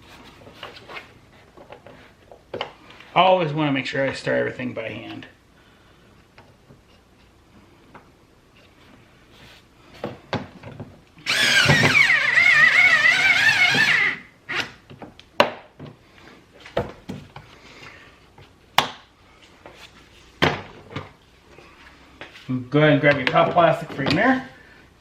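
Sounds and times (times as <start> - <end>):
power drill driving screws: 11.2 - 14.7.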